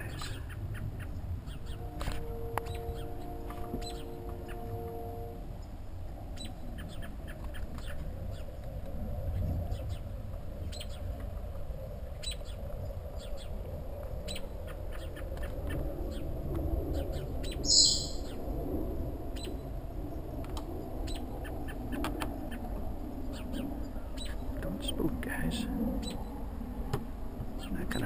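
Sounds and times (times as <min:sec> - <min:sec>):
birds chirping: 0:00.0 - 0:05.7, 0:17.4 - 0:18.4
steady low rumble: 0:00.0 - 0:28.0
high-pitched bird call: 0:17.6 - 0:18.4.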